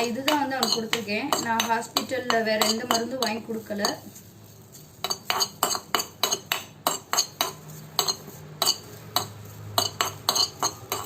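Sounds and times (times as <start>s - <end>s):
utensil scraping hot pan: 0.0s - 11.0s.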